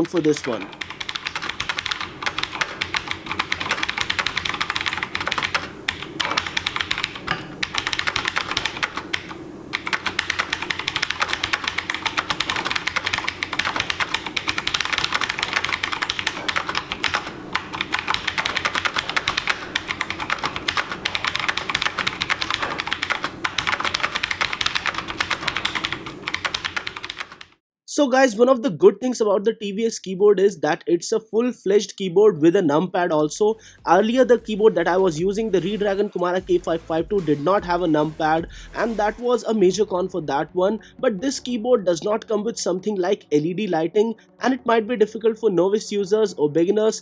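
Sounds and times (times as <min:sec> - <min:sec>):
fast typing on mechanical keyboard: 0:00.0 - 0:27.6.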